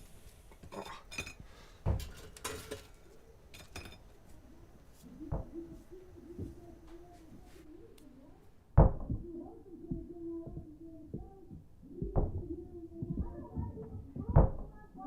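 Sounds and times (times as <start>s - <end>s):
dishes and cutlery clinking: 0.6s - 4.2s.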